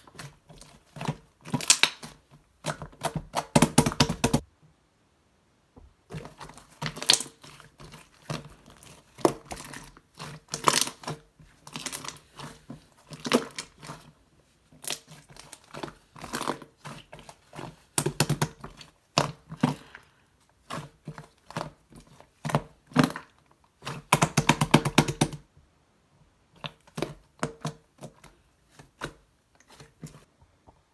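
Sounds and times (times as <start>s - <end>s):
sticky material crackling: 0.0s - 4.4s, 6.1s - 25.4s.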